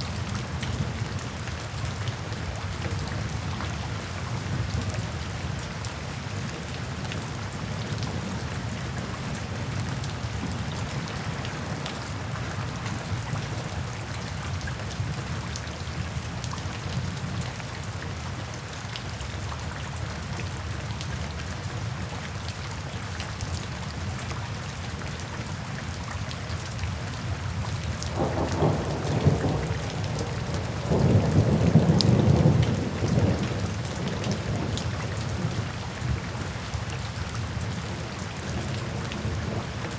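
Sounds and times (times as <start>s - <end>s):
rain drumming on a tin roof: 0.0s - 39.9s
thunder rumbling: 28.1s - 35.6s.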